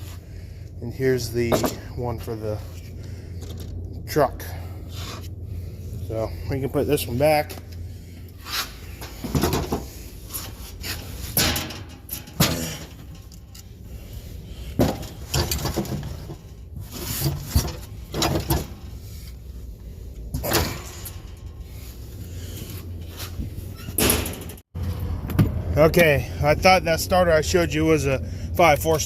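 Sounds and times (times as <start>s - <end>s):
steady low hum: 0.0s - 29.0s
parts clunking and knocking: 1.4s - 2.3s, 3.0s - 3.9s, 8.8s - 19.4s, 20.1s - 21.8s, 22.6s - 25.6s.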